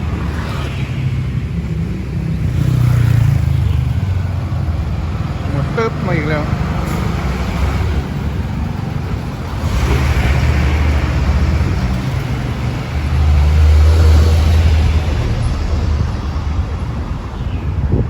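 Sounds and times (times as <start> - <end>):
gusty wind buffeting microphone: 6.5 - 18.0.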